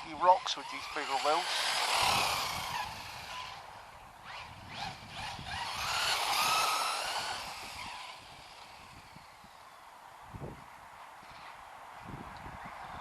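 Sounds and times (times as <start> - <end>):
electric rc car motor whining: 0.0 - 9.8.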